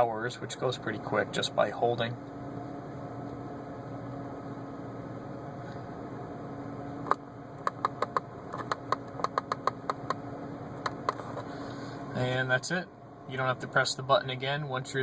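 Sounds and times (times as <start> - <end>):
car cabin hum: 0.0 - 15.0
rotary switch clicking: 7.0 - 10.2.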